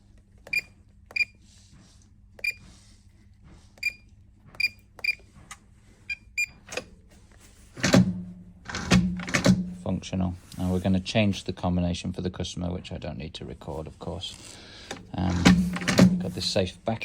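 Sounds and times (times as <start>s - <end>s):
keypad beeps: 0.5s - 1.4s, 2.4s - 2.6s, 3.8s - 5.3s.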